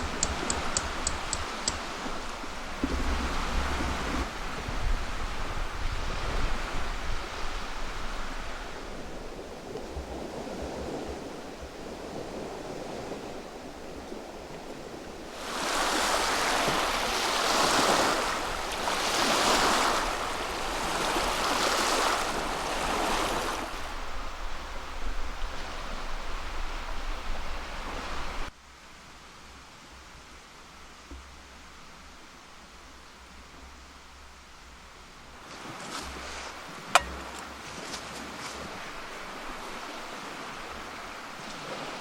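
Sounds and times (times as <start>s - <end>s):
lake waves washing onto shore: 0.0s - 28.5s, 35.3s - 42.0s
wind rumbling on microphone: 0.0s - 28.5s.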